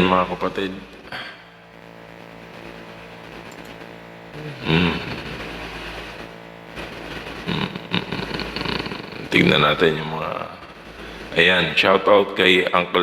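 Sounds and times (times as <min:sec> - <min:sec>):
steady machine hum: 0:00.0 - 0:13.0.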